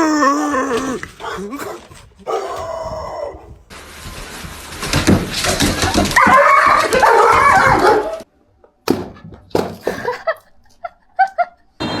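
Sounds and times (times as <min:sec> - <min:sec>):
dog barking and yelping: 0:06.1 - 0:08.3.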